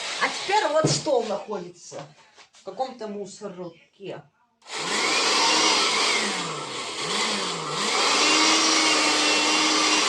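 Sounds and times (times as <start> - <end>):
handheld vacuum cleaner running: 0.0 - 0.6, 4.6 - 10.0.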